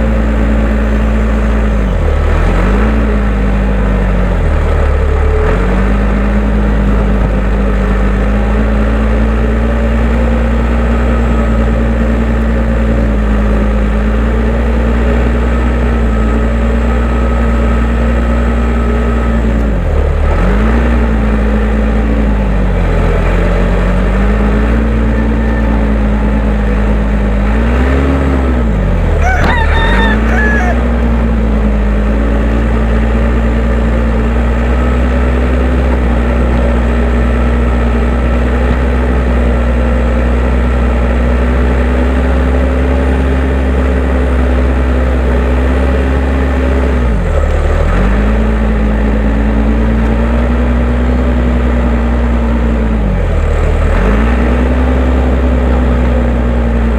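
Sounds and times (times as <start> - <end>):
diesel engine running under load: 0.0 - 56.9
rooster crowing: 29.1 - 31.6.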